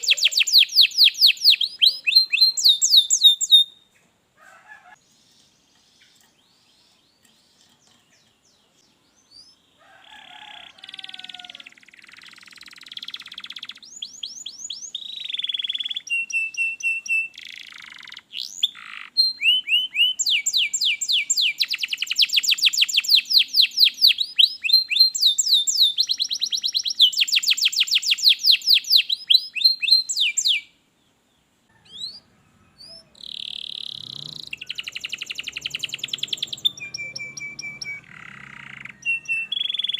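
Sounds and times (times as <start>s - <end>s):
canary singing: 0.0s - 30.8s, 31.7s - 39.9s.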